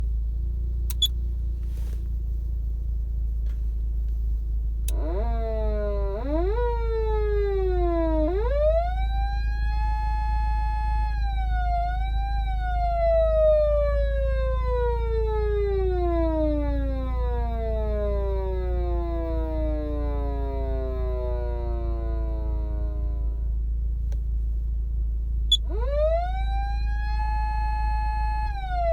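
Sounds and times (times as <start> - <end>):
steady low hum: 0.0 - 28.9
electronic siren wailing: 4.9 - 23.5, 25.5 - 28.9.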